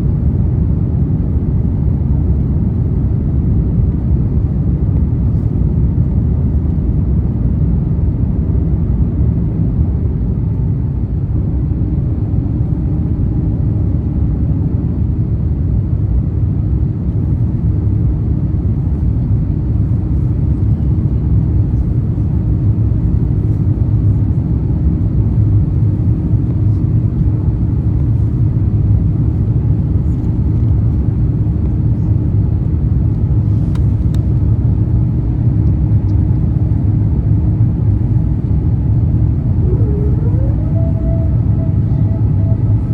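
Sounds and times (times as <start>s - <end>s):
low rumble inside airplane cabin: 0.0s - 42.9s
faint steady hum: 33.0s - 42.9s.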